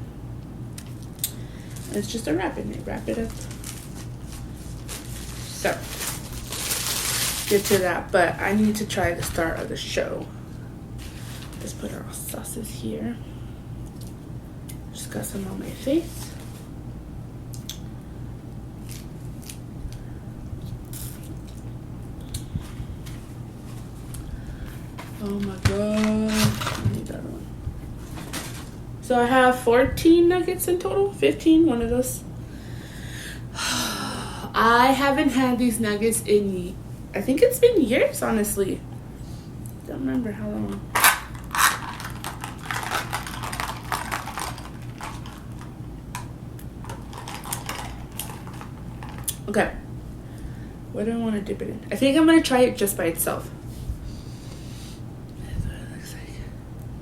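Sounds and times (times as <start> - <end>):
steady low hum: 0.0 - 57.0
food packaging crinkling: 2.7 - 9.7, 11.0 - 11.6, 23.7 - 27.0, 40.7 - 49.4.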